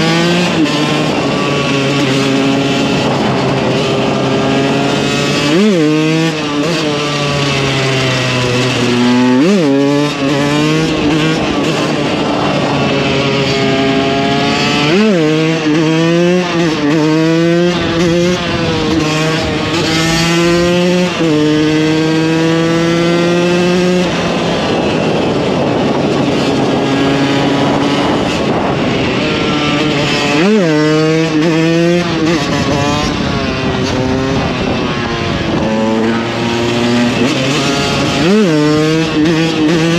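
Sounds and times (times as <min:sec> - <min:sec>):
two-stroke motorcycle engine revving: 0:00.0 - 0:39.9.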